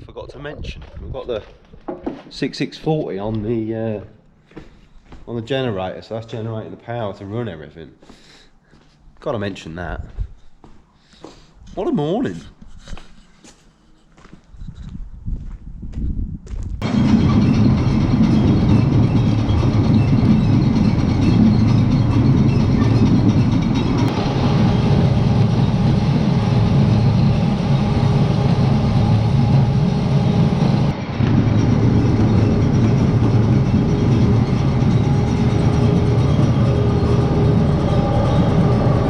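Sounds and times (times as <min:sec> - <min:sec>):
generator running: 0:16.8 - 0:39.0
potato grading machinery running: 0:16.8 - 0:39.0.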